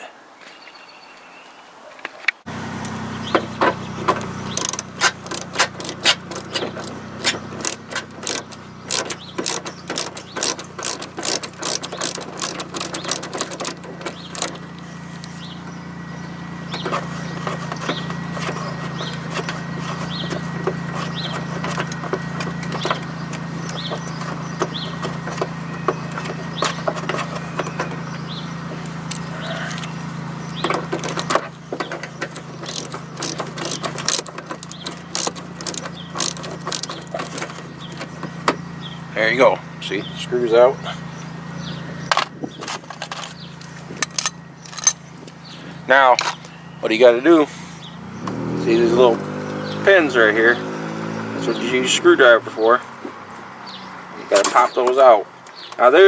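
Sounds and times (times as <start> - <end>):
socket ratchet clicking: 4.1 - 14.6.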